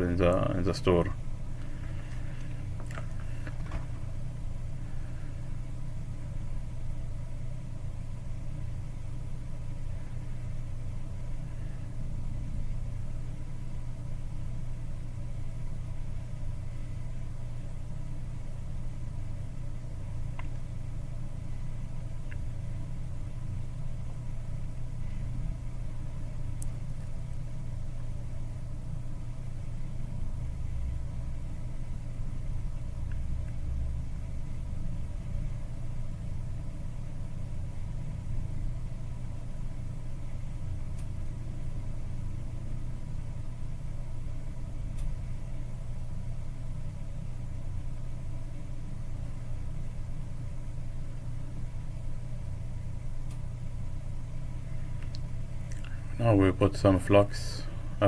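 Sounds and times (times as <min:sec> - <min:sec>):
blower humming: 0:00.0 - 0:14.3, 0:50.6 - 0:58.0.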